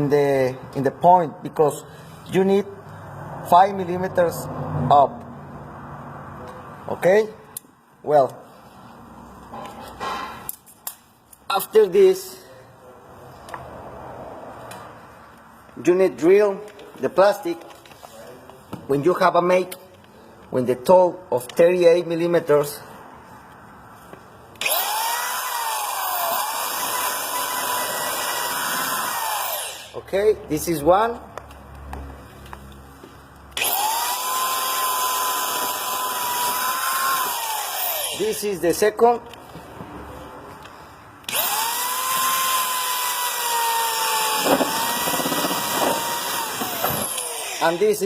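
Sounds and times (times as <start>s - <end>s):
power drill cutting plastic: 24.6s - 29.9s, 33.6s - 38.4s, 41.3s - 48.0s.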